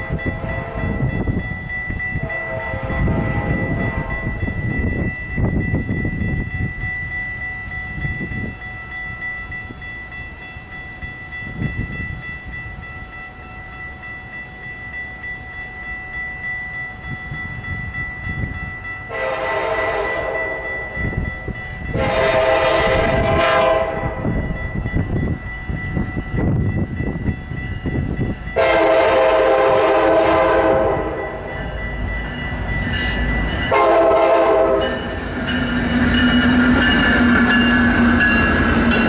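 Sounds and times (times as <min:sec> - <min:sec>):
train air horn blasts: 0:00.0 - 0:01.1, 0:02.2 - 0:04.4, 0:19.1 - 0:20.7, 0:21.9 - 0:24.3, 0:28.6 - 0:31.4, 0:33.0 - 0:35.1
train rumble: 0:00.0 - 0:39.0.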